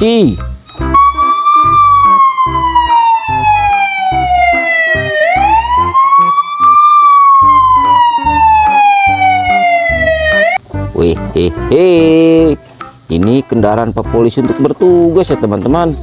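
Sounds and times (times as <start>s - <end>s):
toy police siren wailing: 0.7s - 10.6s.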